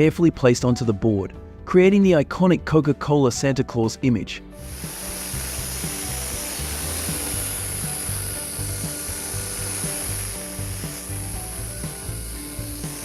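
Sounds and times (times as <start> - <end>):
background music: 0.0 - 13.0
power tool rasping on wood: 4.6 - 13.0.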